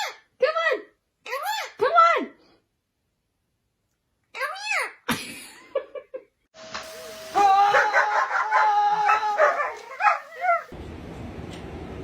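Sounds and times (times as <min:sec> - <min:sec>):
dog howling: 0:07.3 - 0:10.7.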